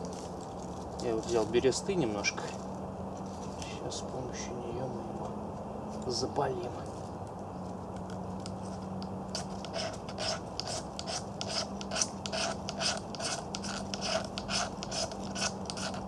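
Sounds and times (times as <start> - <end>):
fire-striker rod scraping: 8.4 - 16.0.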